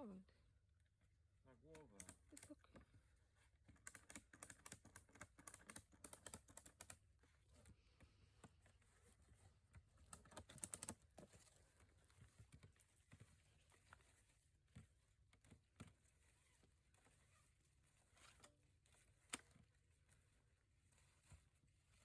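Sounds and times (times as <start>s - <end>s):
faint clicks and taps: 1.7s - 17.2s.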